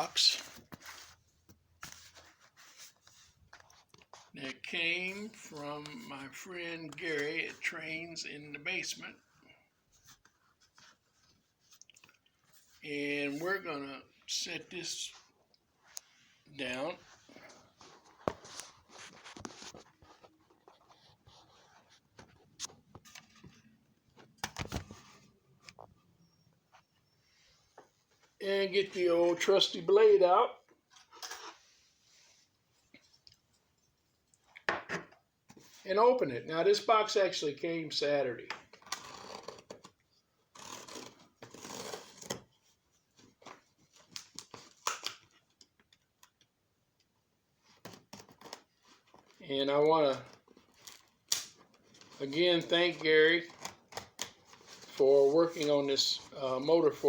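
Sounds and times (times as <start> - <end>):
scrapes and rustles: 17.0 - 23.8.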